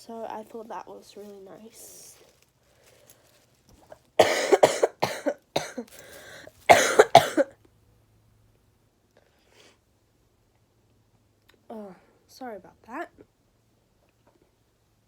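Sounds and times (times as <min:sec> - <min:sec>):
woman coughing: 0:04.2 - 0:05.9, 0:06.7 - 0:07.5.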